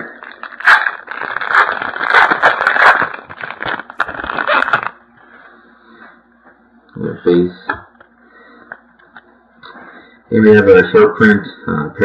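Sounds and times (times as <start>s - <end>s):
wrapper crinkling being torn: 0.0s - 5.0s.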